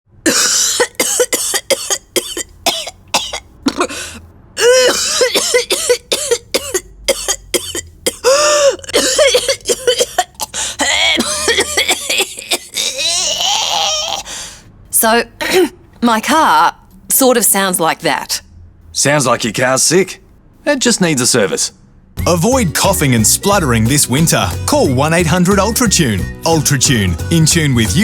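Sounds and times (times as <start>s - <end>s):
person coughing and spluttering: 0.3s - 14.4s, 15.4s - 15.8s
throat-clearing: 0.3s - 14.4s.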